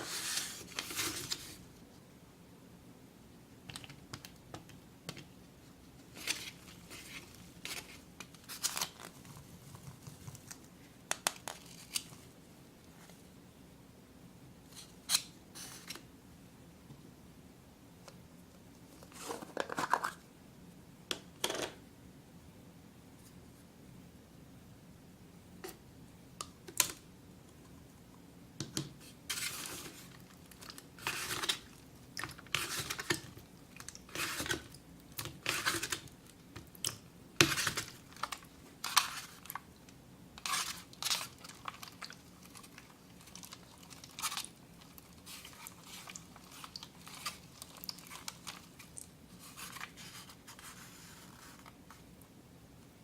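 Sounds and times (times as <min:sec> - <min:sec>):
craft materials crinkling: 0:40.4 - 0:52.0.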